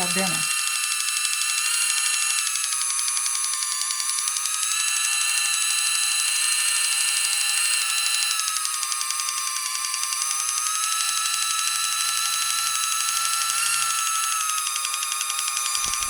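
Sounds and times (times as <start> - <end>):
can opener motor whirring: 10.1 - 16.0.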